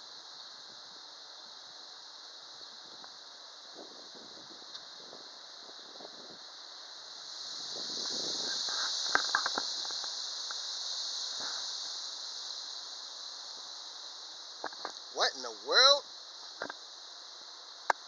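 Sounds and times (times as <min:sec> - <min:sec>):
wind rushing through leaves: 0:02.7 - 0:14.5.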